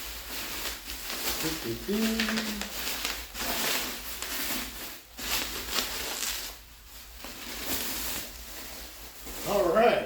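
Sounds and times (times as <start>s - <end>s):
packing material crinkling: 0.0s - 10.0s.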